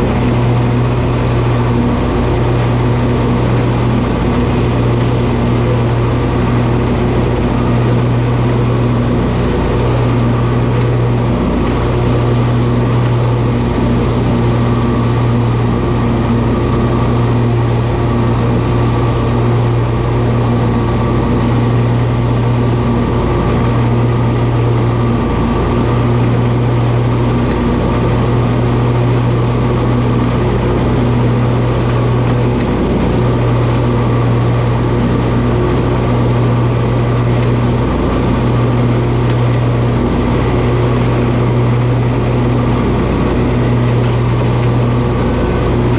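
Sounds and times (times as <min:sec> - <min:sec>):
lawn mower engine running: 0:00.0 - 0:45.9.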